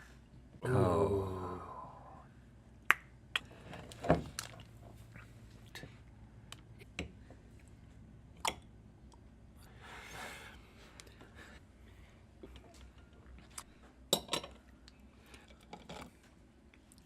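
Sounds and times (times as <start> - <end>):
people chewing food: 3.4 - 14.0, 14.6 - 17.0.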